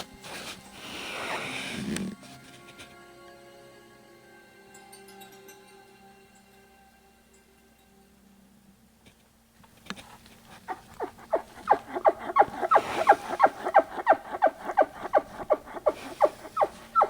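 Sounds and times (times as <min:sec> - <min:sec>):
bull elk chuckling calls: 0:10.6 - 0:17.0.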